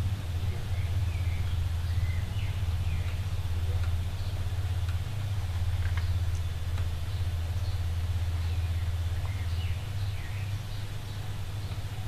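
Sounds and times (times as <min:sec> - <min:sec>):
steady low hum: 0:00.0 - 0:12.0
light ticks: 0:03.0 - 0:04.0, 0:04.8 - 0:07.0.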